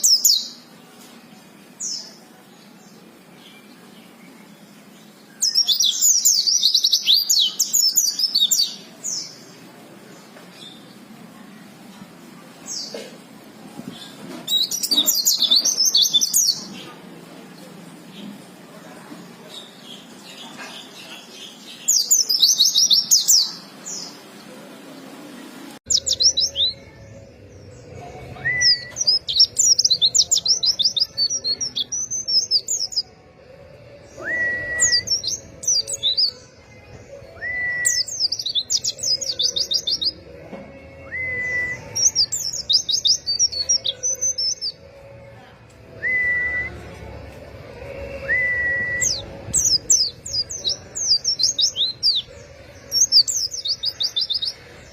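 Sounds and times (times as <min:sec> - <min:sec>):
birds twittering song: 0:00.0 - 0:12.0, 0:13.7 - 0:24.6, 0:25.8 - 0:33.2, 0:33.8 - 0:44.8, 0:45.9 - 0:54.9
rising whistled bird notes: 0:34.2 - 0:35.8.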